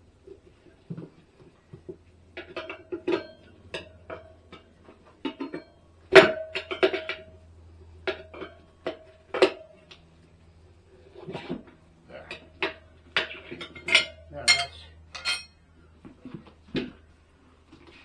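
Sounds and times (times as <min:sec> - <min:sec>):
tyre irons clanking on wheel rim: 0:13.6 - 0:15.5.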